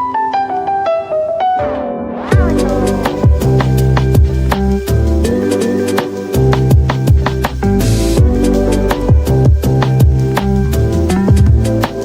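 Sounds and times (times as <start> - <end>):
piano-like keyboard melody: 0.0 - 12.0
rushing sweep: 1.8 - 6.3.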